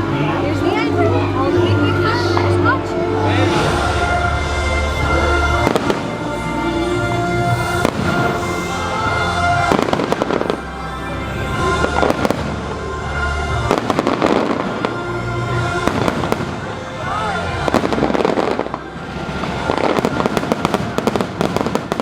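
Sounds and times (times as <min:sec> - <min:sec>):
music playing: 0:00.0 - 0:22.0
fireworks bangs and crackling: 0:05.6 - 0:10.7, 0:11.5 - 0:22.0.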